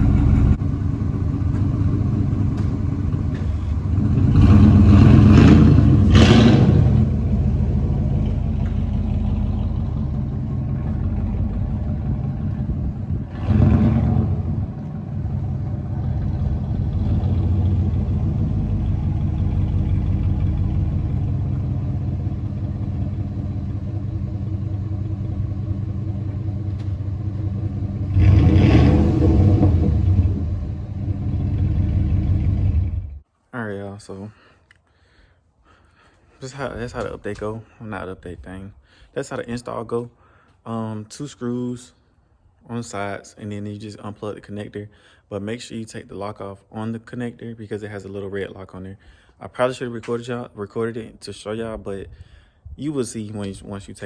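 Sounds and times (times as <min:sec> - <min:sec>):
pickup engine idling with surges: 0:00.0 - 0:33.2.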